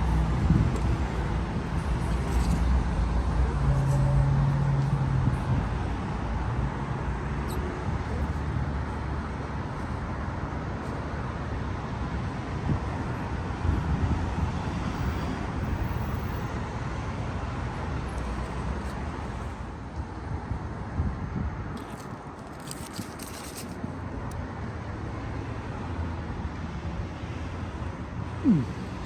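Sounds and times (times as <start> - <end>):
vehicle engine humming: 0.0 - 13.7, 21.8 - 29.0
road traffic rumble: 0.0 - 29.0.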